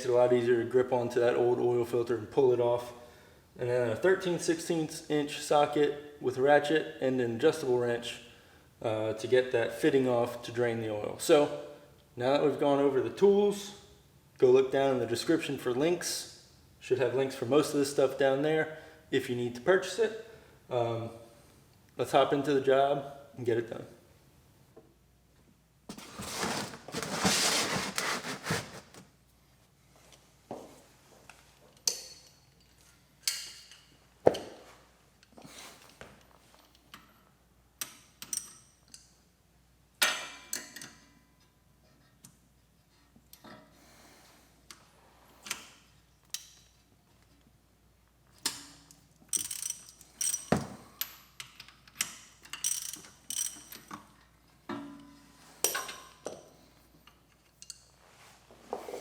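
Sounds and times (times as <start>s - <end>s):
rustling: 25.9s - 29.1s
hand tools clicking and clinking: 49.3s - 54.0s.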